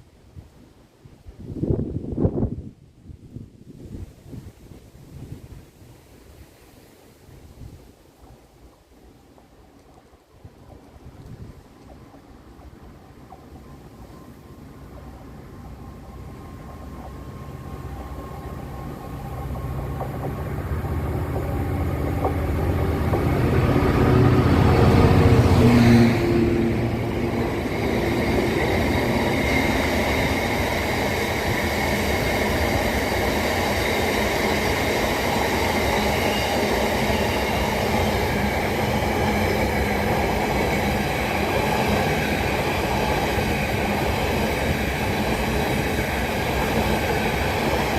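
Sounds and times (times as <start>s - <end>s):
diesel locomotive engine: 9.2s - 47.9s
train wheels clattering on rail: 16.0s - 47.9s.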